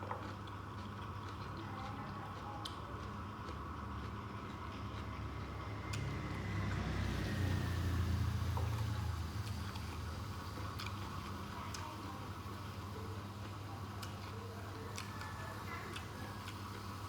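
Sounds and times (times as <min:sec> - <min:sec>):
passing vehicle rumble: 0:05.6 - 0:09.4.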